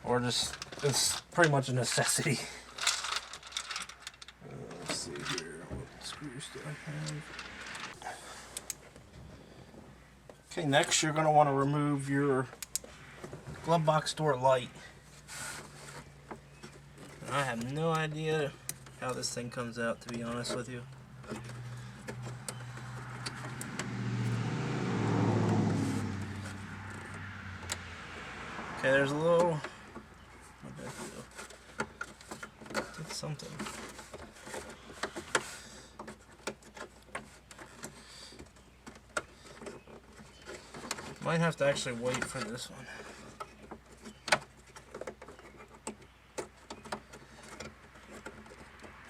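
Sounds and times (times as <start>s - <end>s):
car driving past: 21.6s - 29.0s.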